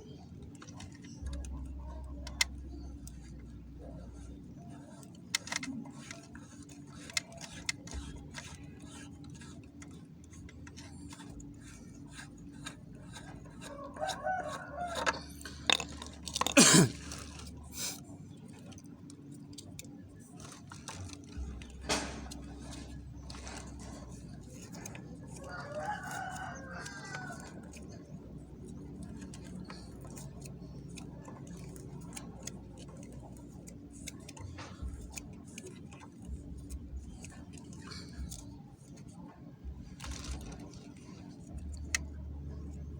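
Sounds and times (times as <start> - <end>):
rooster crowing: 13.7 - 15.3, 25.4 - 27.5.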